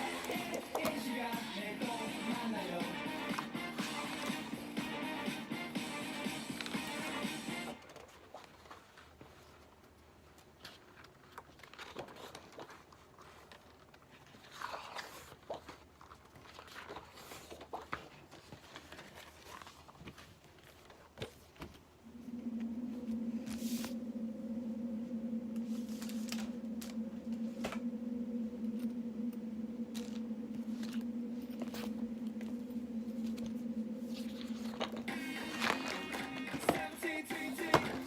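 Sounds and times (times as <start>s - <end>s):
steady low hum: 0.0s - 7.7s, 21.8s - 38.0s.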